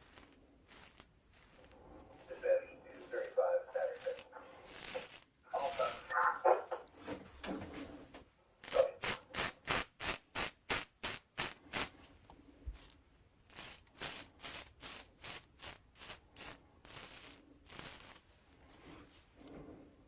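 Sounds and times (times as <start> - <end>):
razor cutting stubble: 0.0 - 6.9, 8.6 - 12.0, 13.5 - 18.2.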